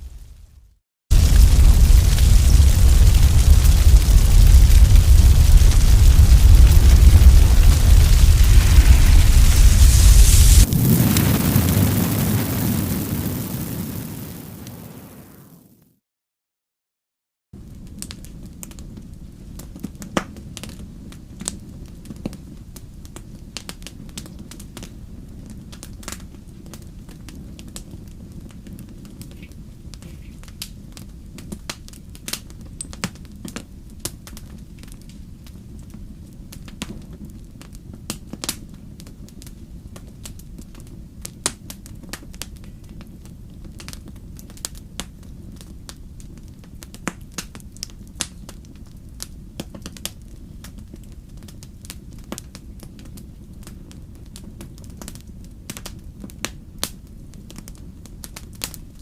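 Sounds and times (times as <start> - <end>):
low rumble of flames: 0.0 - 15.8, 17.6 - 59.0
burning logs popping: 1.1 - 15.4, 40.0 - 58.9
campfire crackling: 1.1 - 15.6, 17.9 - 59.0.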